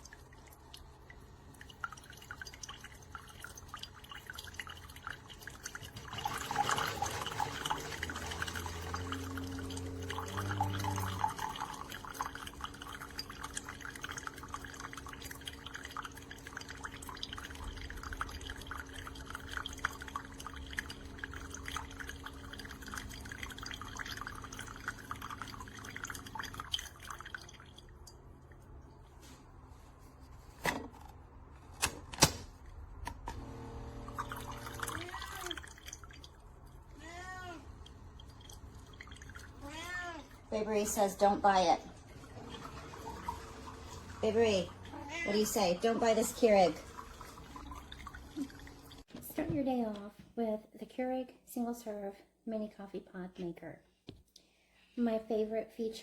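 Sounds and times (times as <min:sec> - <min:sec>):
coffee dripping into a mug: 0:00.0 - 0:28.7, 0:37.7 - 0:39.6
coffee maker pump humming: 0:00.0 - 0:31.3, 0:32.8 - 0:49.1.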